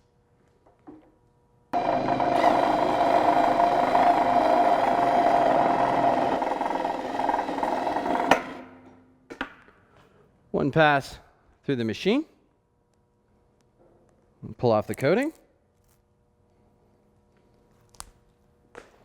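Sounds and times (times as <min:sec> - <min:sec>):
electric drill spinning: 0:01.8 - 0:08.6.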